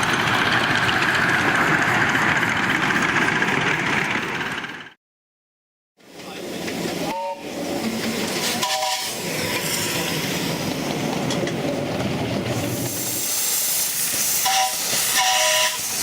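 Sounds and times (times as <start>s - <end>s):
steam hissing: 12.6s - 16.0s.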